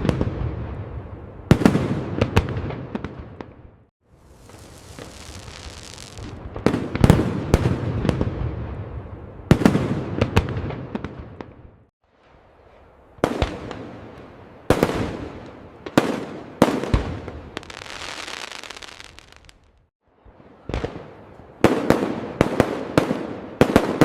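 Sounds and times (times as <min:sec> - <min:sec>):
fireworks bangs: 0:00.0 - 0:11.7, 0:13.2 - 0:19.9.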